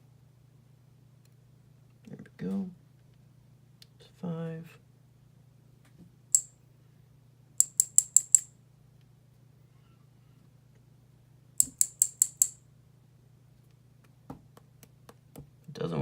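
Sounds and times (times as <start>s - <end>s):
metal lock parts clicking: 7.6s - 8.5s, 11.6s - 12.6s.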